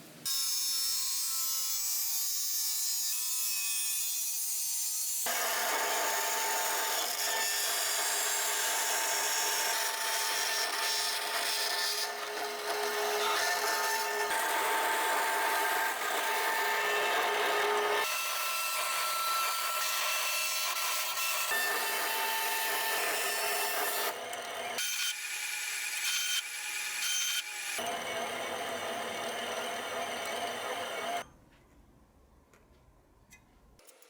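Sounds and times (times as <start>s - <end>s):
power tool working wood: 5.3s - 31.2s.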